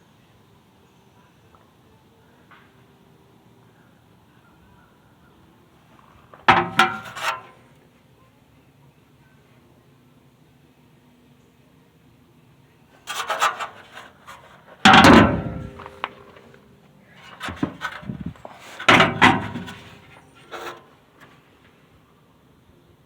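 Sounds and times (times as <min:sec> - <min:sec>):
metal clunks and scraping: 0:06.3 - 0:07.6, 0:13.0 - 0:16.6, 0:17.2 - 0:21.4
loud thumps: 0:14.9 - 0:16.2.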